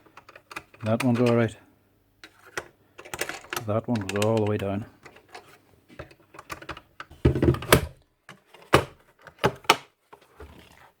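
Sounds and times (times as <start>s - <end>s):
light clicks of parts: 2.2s - 7.1s.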